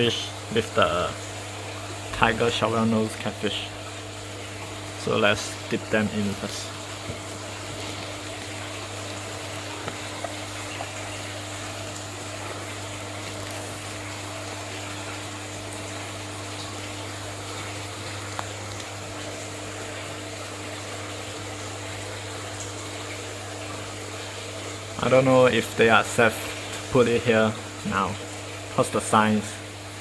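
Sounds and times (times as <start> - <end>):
circulating water: 0.0 - 30.0
filter pump humming: 0.0 - 30.0
faint taps: 9.8 - 11.0.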